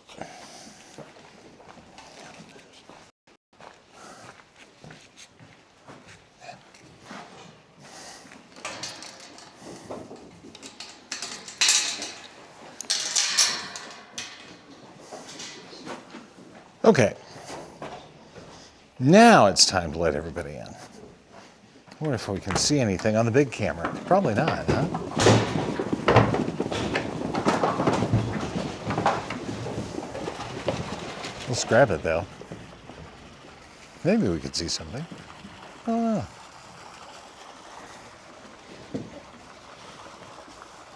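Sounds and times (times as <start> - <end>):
knocks and clattering bumps: 8.6 - 16.8, 22.0 - 33.7.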